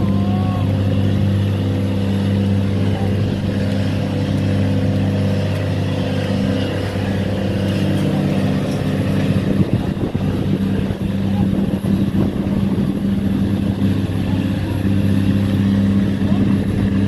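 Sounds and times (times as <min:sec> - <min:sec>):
diesel engine droning: 0:00.0 - 0:17.0.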